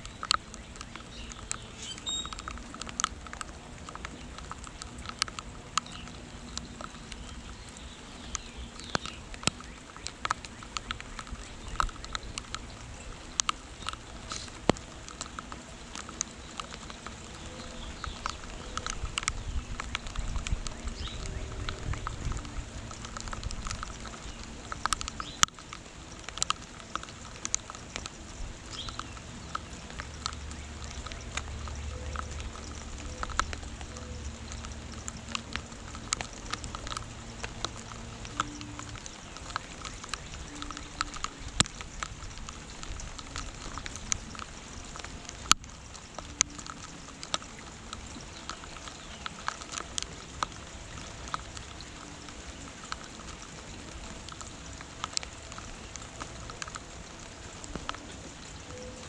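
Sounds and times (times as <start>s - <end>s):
bird chirp: 0.0s - 2.6s, 5.8s - 14.6s
drops ticking on a hard surface: 0.0s - 59.0s
rain pattering: 0.0s - 59.0s.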